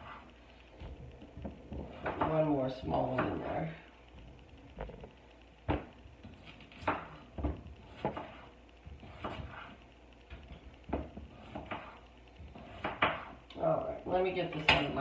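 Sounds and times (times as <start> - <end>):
knife chopping on cutting board: 5.7 - 9.8, 10.9 - 13.4.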